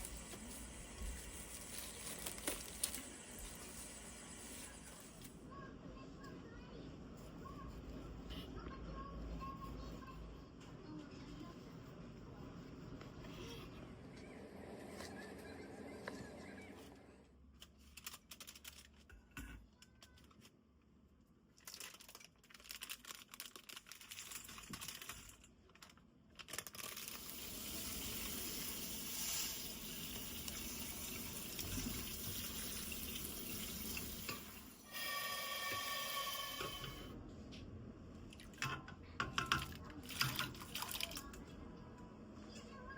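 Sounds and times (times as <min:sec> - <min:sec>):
tap water running into sink: 0:27.3 - 0:34.8.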